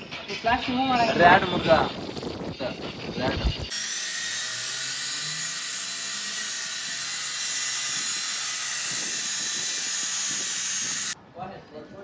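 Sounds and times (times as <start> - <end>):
concrete saw whining: 3.7 - 11.2.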